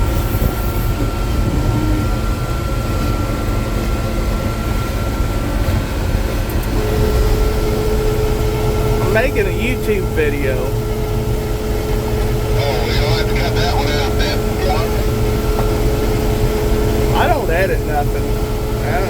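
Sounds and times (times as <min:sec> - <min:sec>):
combine harvester rumble: 0:00.0 - 0:19.0
thin constant whine: 0:06.6 - 0:19.0.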